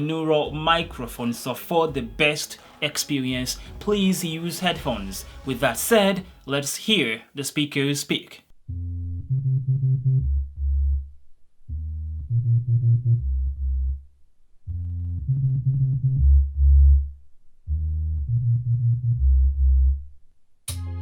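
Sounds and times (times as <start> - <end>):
bass-heavy synth riff: 0.0 - 6.5, 8.7 - 21.0
full music track with drums: 0.0 - 6.5.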